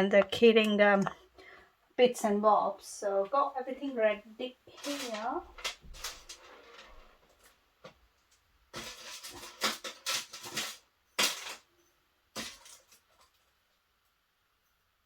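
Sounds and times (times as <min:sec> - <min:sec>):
metal parts clattering: 0:04.8 - 0:07.1, 0:08.8 - 0:11.7, 0:12.4 - 0:13.4
metal parts rustling and clinking: 0:04.8 - 0:07.6.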